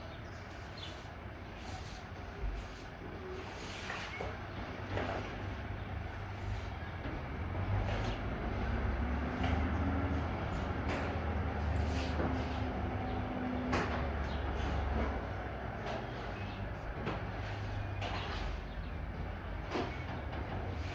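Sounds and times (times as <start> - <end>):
truck engine rumbling: 4.4 - 20.9.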